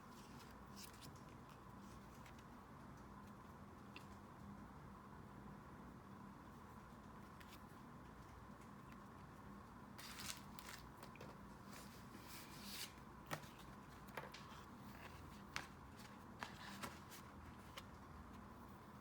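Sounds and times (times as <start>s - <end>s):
paper rustling: 10.0s - 18.6s.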